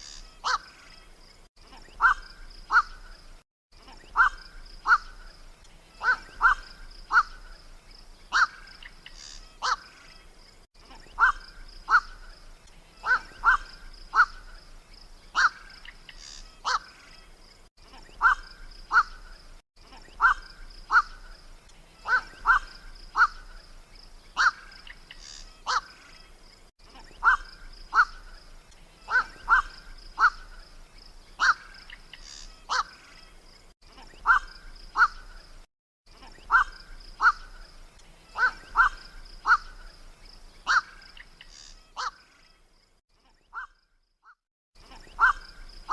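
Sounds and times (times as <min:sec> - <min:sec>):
heron harsh calls: 0:02.0 - 0:03.0, 0:08.3 - 0:09.8, 0:15.4 - 0:16.9, 0:20.2 - 0:21.2, 0:22.0 - 0:23.5, 0:24.4 - 0:26.0, 0:27.2 - 0:28.2, 0:29.1 - 0:30.5, 0:31.4 - 0:32.9, 0:36.5 - 0:37.6, 0:38.3 - 0:39.8, 0:40.7 - 0:42.2.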